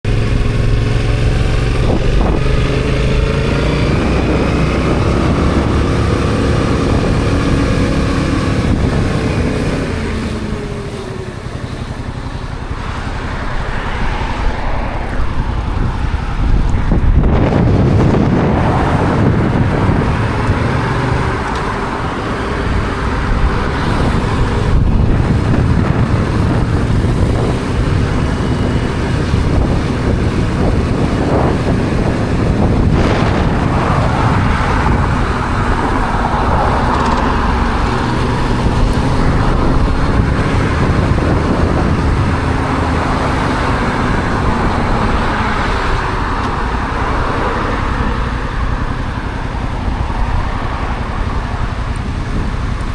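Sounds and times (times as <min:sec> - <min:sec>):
motorcycle engine running: 0:00.0 - 0:52.9
wind rushing over microphone: 0:00.0 - 0:52.9.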